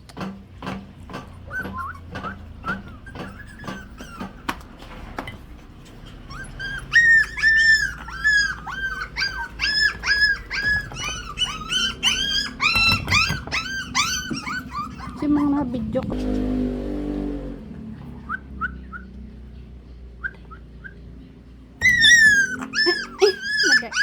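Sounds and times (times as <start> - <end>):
puppies whining and yelping: 1.2 - 16.1, 21.8 - 24.0.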